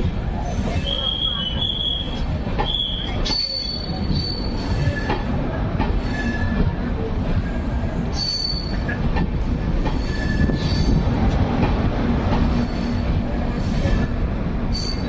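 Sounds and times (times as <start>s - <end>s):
train wheels rumbling on rail: 0.0s - 15.0s
metallic wheel squeals: 0.9s - 5.1s, 8.2s - 8.9s, 14.7s - 15.0s.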